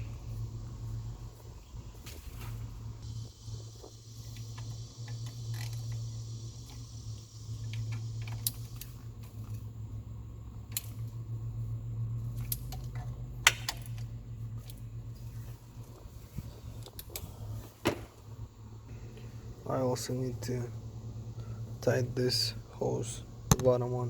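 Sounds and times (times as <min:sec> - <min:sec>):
steady low hum: 0:00.0 - 0:24.0
tools and parts clinking: 0:04.2 - 0:06.9, 0:12.2 - 0:16.0.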